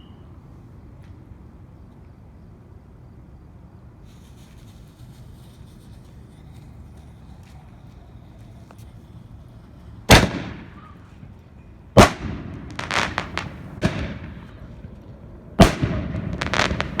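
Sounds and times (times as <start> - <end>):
firework booms: 10.1 - 11.4, 12.0 - 17.0
firework crackling pops: 10.1 - 11.4, 12.0 - 17.0.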